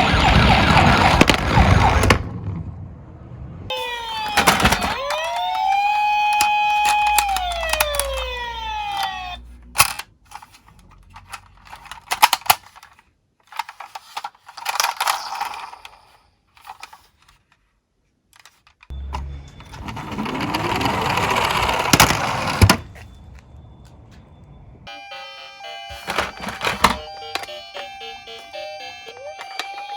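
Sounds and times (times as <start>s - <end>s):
toy ambulance siren: 0.0s - 2.1s, 3.7s - 10.5s, 18.9s - 23.1s, 24.8s - 29.9s
toy car rolling down slope: 3.7s - 17.2s, 19.6s - 22.9s
toy cars clicking and clattering: 4.2s - 17.6s, 18.4s - 18.9s, 25.8s - 29.9s.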